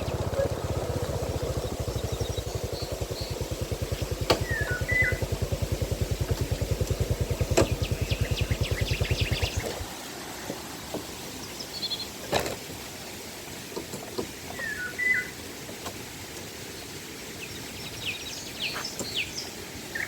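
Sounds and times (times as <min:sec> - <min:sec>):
birds chirping: 0:00.0 - 0:05.6, 0:06.2 - 0:09.9, 0:11.3 - 0:12.2, 0:14.5 - 0:15.4, 0:17.4 - 0:20.0
small engine puttering: 0:00.0 - 0:09.8.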